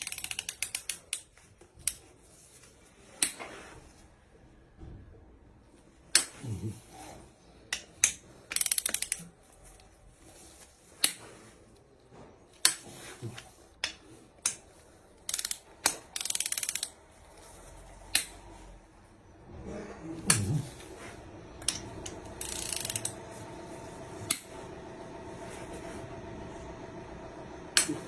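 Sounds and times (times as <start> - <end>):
ratchet wrench clicking: 0.0 - 2.0, 8.0 - 9.3, 15.3 - 17.0, 22.4 - 23.1.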